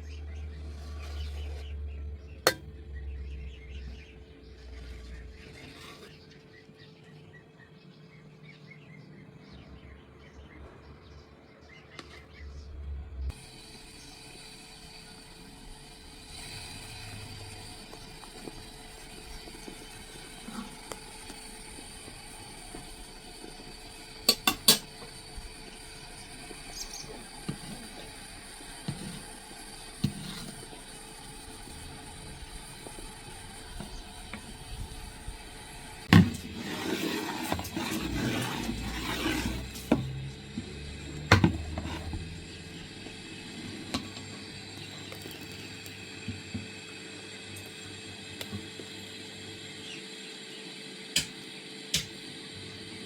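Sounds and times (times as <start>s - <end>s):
utensils scraping and rustling: 28.8s - 31.4s, 36.1s - 40.2s, 41.1s - 42.4s.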